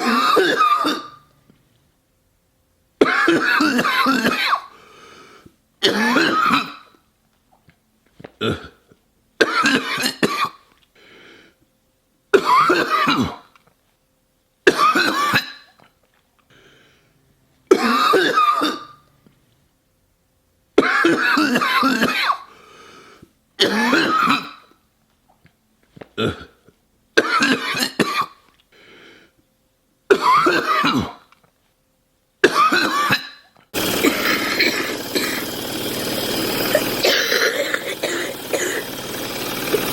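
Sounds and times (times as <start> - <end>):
person coughing: 0.0 - 1.2, 3.0 - 4.7, 5.8 - 6.9, 8.4 - 8.8, 9.4 - 10.6, 12.4 - 13.4, 14.7 - 15.5, 17.7 - 19.0, 20.8 - 22.5, 23.6 - 24.6, 27.2 - 28.4, 30.1 - 31.2, 32.4 - 33.4, 36.8 - 38.9.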